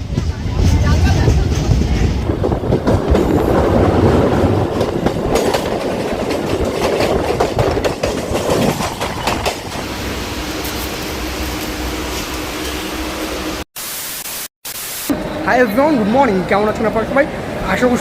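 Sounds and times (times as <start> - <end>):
train wheels clattering on rails: 0.0 - 10.0.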